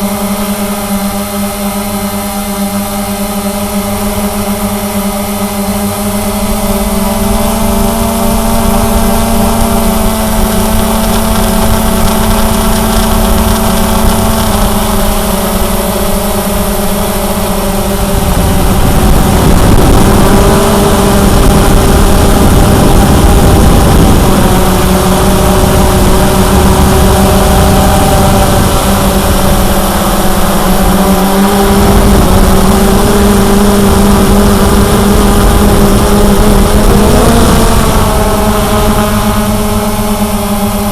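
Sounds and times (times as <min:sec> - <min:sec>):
quadcopter motors whining: 0:00.0 - 0:40.9.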